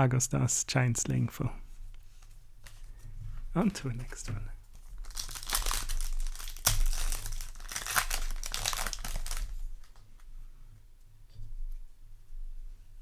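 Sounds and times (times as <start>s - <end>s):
foil wrapper crinkling and tearing: 3.6s - 10.0s.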